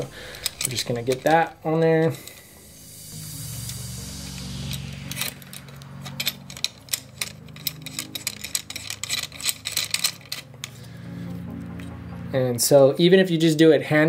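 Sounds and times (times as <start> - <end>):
thumbscrew turning: 4.7 - 10.8.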